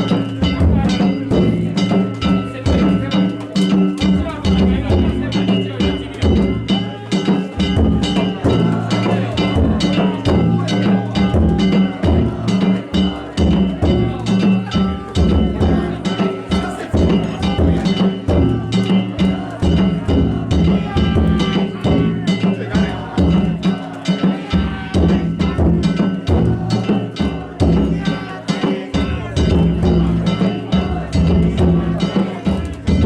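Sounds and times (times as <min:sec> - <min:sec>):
taiko drums: 0:00.0 - 0:33.0
voices calling: 0:00.0 - 0:33.0.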